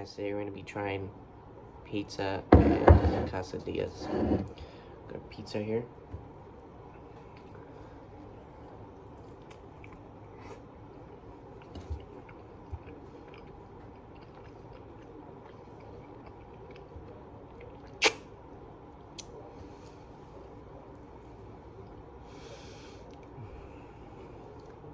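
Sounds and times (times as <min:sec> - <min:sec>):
chewing food: 0:06.6 - 0:18.0, 0:24.4 - 0:24.9
wet mouth clicks and smacks: 0:17.8 - 0:18.3.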